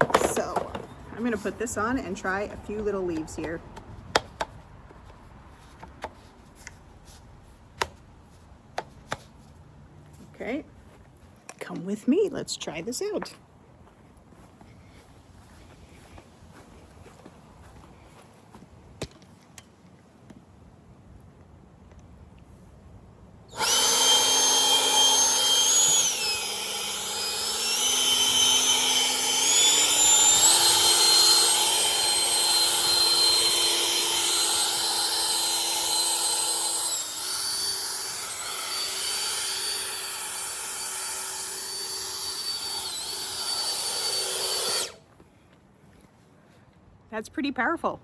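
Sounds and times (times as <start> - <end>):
leaf blower whining: 23.5 - 45.0.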